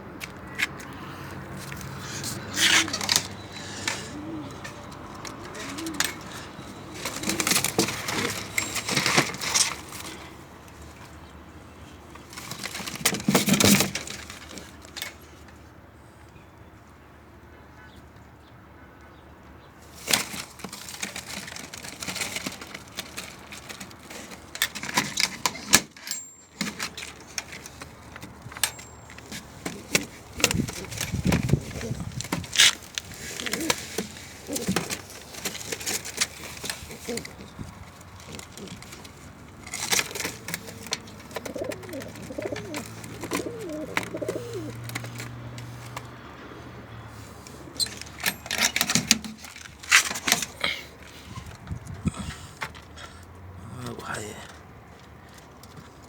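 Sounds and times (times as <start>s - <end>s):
pigeons cooing: 0.8s - 10.5s, 28.4s - 49.1s
wings flapping: 2.3s - 10.2s, 29.7s - 46.1s.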